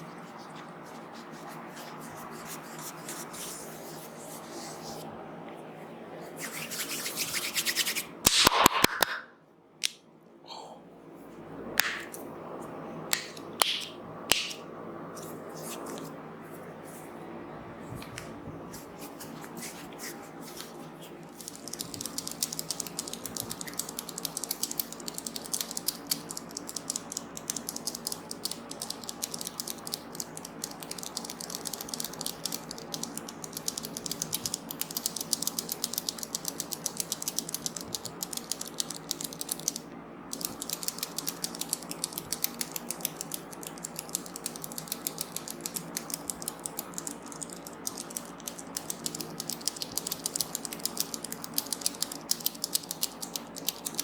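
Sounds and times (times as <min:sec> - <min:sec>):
hands rubbing head and hair: 0:00.0 - 0:05.1, 0:06.2 - 0:08.2, 0:15.2 - 0:17.2, 0:18.0 - 0:21.6
sharp snaps: 0:08.2 - 0:10.0, 0:11.8 - 0:12.2, 0:13.1 - 0:14.6.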